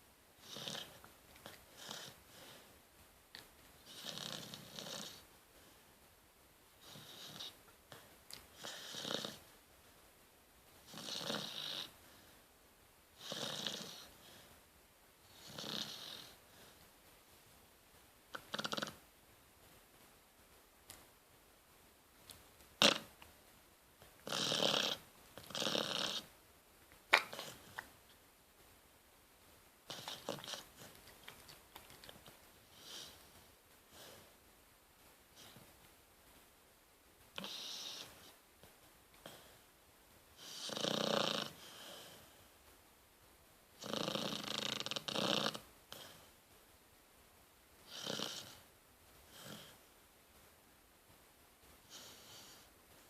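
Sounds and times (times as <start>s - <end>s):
puppy snoring: 0.4s - 2.7s, 3.8s - 5.3s, 6.8s - 9.6s, 10.8s - 12.3s, 13.2s - 14.4s, 15.2s - 16.8s, 18.3s - 19.0s, 22.8s - 23.2s, 24.2s - 26.3s, 27.1s - 27.9s, 29.9s - 34.3s, 37.3s - 38.4s, 40.4s - 42.4s, 43.8s - 46.4s, 47.8s - 49.9s, 51.8s - 52.7s
faint breath: 1.7s - 2.8s, 12.0s - 12.6s, 14.0s - 14.7s, 32.6s - 34.4s, 41.6s - 42.7s, 51.8s - 52.8s.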